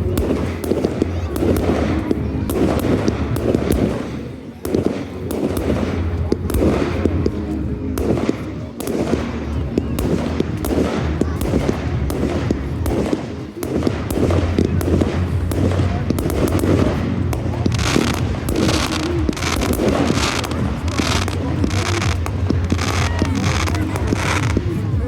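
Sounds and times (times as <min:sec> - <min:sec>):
fireworks popping and crackling: 0:00.0 - 0:25.0
low rumble: 0:13.9 - 0:25.0.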